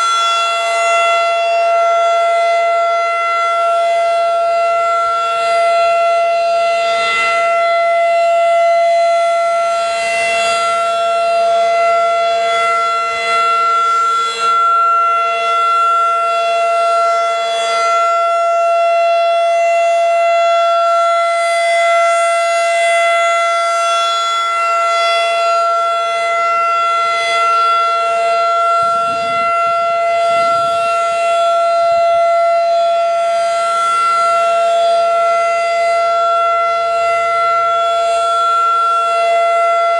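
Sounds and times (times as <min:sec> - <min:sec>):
tornado siren steady tone: 0:00.0 - 0:39.9.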